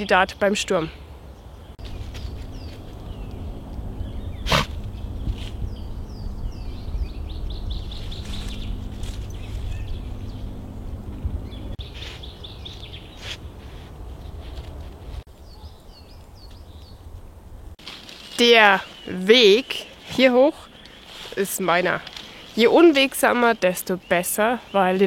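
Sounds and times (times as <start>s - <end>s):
birds chirping: 0.0s - 17.2s, 18.0s - 25.0s
low rumble: 1.8s - 11.9s.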